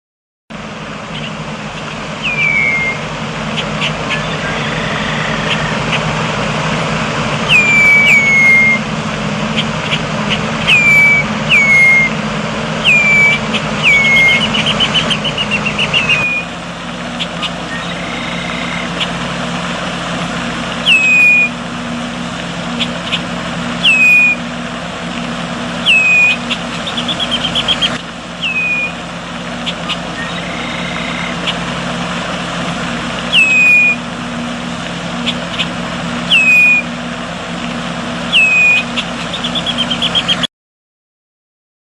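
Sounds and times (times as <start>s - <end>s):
bird chirping: 1.1s - 6.1s, 7.5s - 8.8s, 9.6s - 12.1s, 12.8s - 16.6s, 17.2s - 19.2s, 20.8s - 21.5s, 22.8s - 24.4s, 25.8s - 29.0s, 29.6s - 31.6s, 33.3s - 34.0s, 35.2s - 36.9s, 38.3s - 40.5s.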